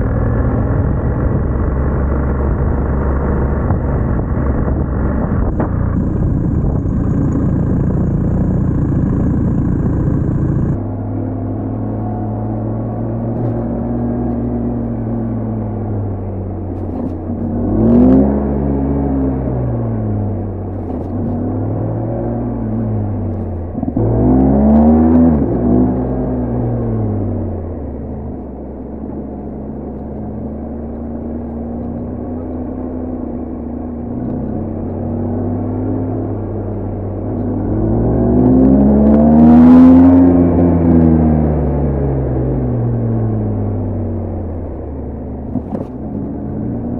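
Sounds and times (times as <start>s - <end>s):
motorcycle engine idling: 0.0s - 17.6s
motorcycle engine revving: 0.0s - 46.9s.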